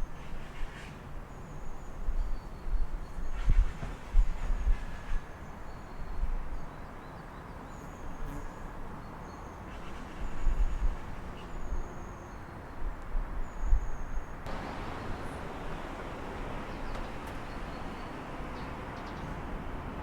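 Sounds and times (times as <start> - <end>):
low rumble of traffic: 9.6 - 20.0
birds chirping: 14.5 - 20.0.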